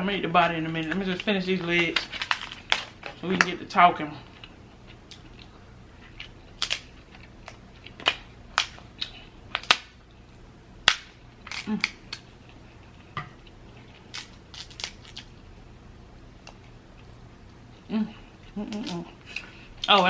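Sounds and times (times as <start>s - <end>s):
crab shells cracking: 0.8s - 3.5s, 6.2s - 10.0s, 10.8s - 12.3s, 13.5s - 15.4s.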